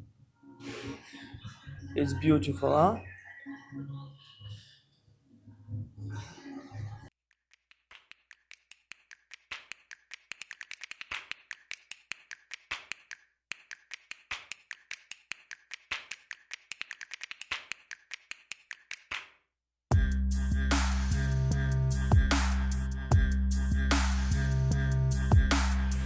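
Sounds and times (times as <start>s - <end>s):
rapid sharp clicks: 7.6s - 19.3s.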